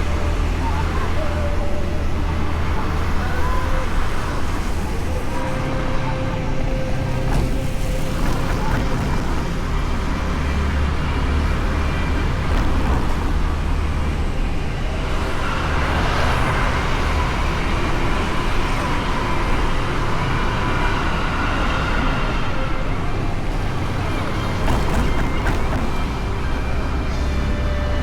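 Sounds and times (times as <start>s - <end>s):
road rumble: 0.0s - 28.0s
scooter engine drone: 0.0s - 28.0s.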